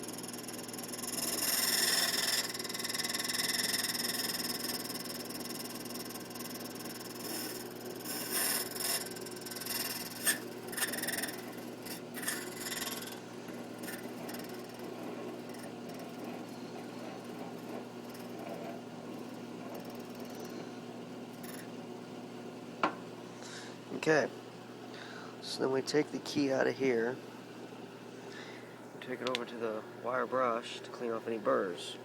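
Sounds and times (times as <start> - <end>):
cutting wheel grinding key: 0.0 - 20.5, 21.3 - 21.7
machine motor running: 0.0 - 21.7.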